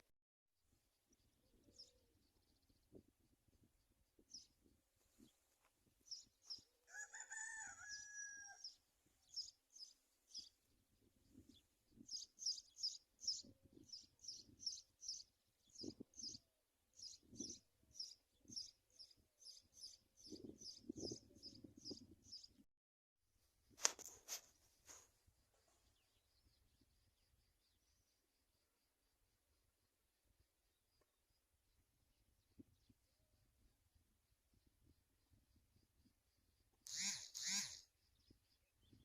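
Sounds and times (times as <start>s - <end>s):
small birds chirping: 0.9s - 22.6s, 34.6s - 39.0s
rooster crowing: 6.8s - 8.8s.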